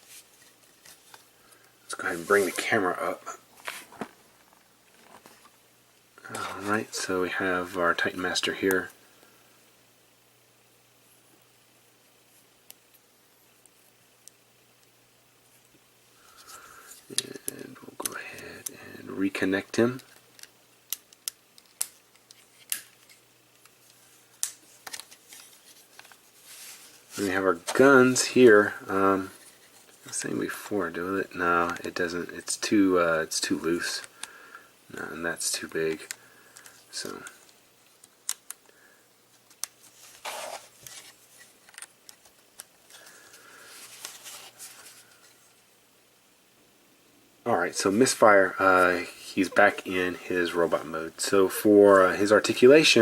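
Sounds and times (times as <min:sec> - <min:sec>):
plastic scraping and rustling: 0:02.0 - 0:05.6, 0:39.4 - 0:45.4.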